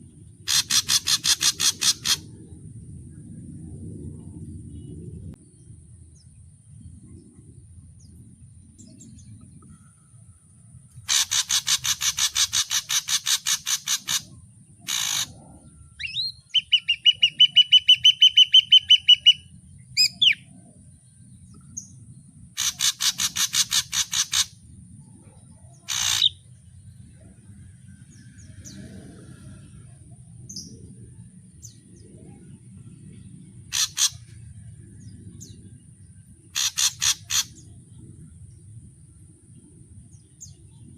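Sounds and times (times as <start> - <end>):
bird singing varied medley: 0.0 - 2.5, 11.0 - 29.2, 30.4 - 40.9.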